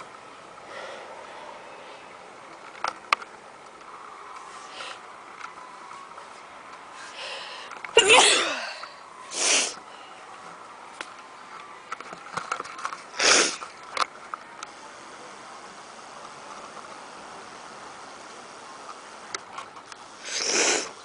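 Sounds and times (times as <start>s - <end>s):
person sneezing: 8.0s - 8.8s
sniffs: 9.3s - 9.8s, 13.2s - 13.6s, 20.2s - 21.0s.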